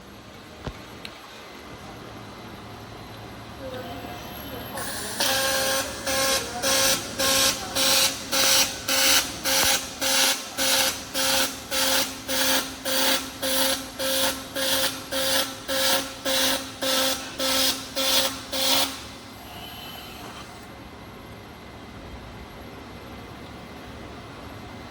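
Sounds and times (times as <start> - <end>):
welding arc crackling: 4.8 - 20.6.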